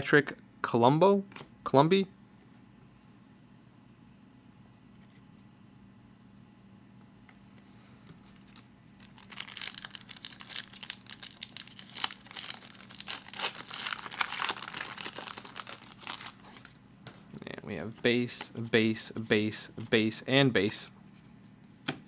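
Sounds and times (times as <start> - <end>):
foil wrapper tearing and crinkling: 8.4 - 16.8.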